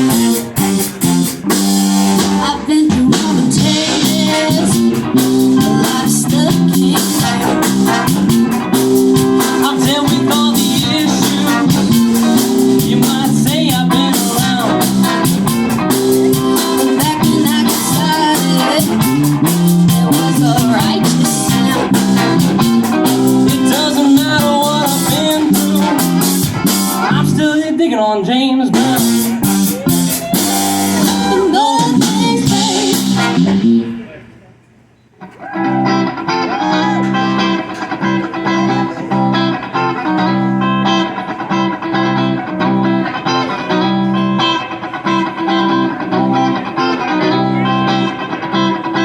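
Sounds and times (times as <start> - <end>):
drum kit beat: 0.0 - 27.4, 28.7 - 34.3
electric guitar: 0.0 - 34.4, 35.2 - 49.0
live band playing: 0.0 - 34.5, 35.2 - 49.0.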